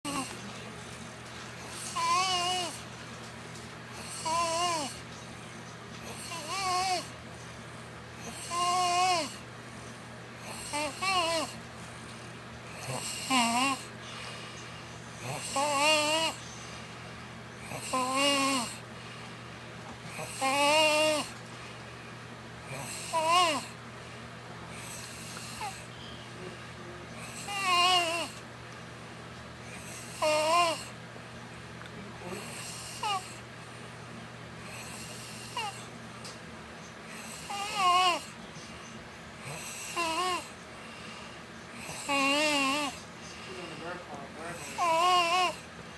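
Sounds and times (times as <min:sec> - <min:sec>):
girl snoring with warbling tone: 0:00.1 - 0:00.4, 0:01.7 - 0:02.8, 0:04.0 - 0:05.0, 0:06.1 - 0:07.2, 0:08.2 - 0:09.4, 0:10.4 - 0:11.6, 0:12.8 - 0:13.9, 0:15.2 - 0:16.4, 0:17.6 - 0:18.8, 0:20.1 - 0:21.4, 0:22.7 - 0:23.8, 0:24.8 - 0:25.9, 0:27.2 - 0:28.4, 0:29.7 - 0:30.9, 0:32.2 - 0:33.4, 0:34.7 - 0:35.9, 0:37.2 - 0:38.4, 0:39.4 - 0:40.5, 0:41.8 - 0:43.0, 0:44.6 - 0:45.7.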